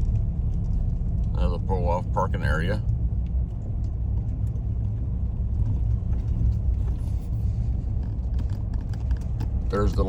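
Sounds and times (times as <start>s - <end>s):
car road rumble from inside: 0.0s - 10.0s.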